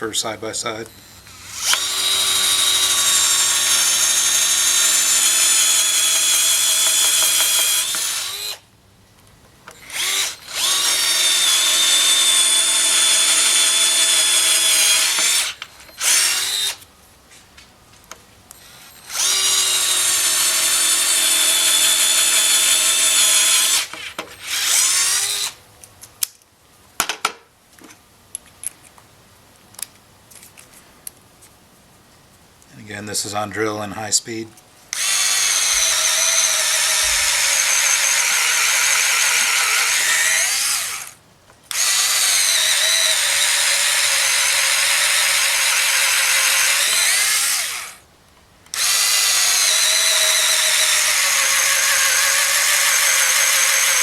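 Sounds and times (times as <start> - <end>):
cordless screwdriver motor whining: 0.8 - 8.6, 9.7 - 16.8, 18.5 - 25.6, 34.9 - 48.0, 48.7 - 54.0.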